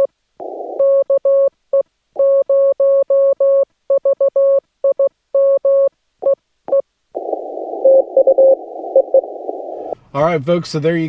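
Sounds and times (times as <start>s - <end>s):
morse code beeps: 2.2s - 10.0s
radio band hiss: 7.2s - 11.0s.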